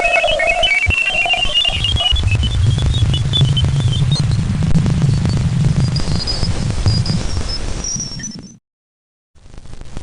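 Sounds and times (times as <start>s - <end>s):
high chirping tones: 0.0s - 3.6s
crackling low rumble: 0.0s - 8.6s, 9.4s - 10.0s.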